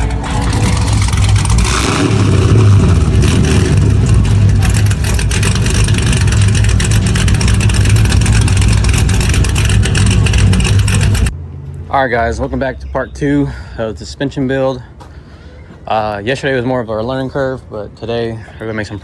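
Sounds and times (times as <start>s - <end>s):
car engine running: 0.0s - 12.8s.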